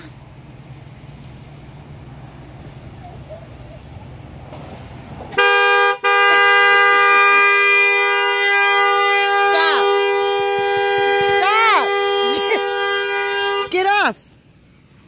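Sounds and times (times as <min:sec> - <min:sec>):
car horn honking: 0:05.3 - 0:14.2.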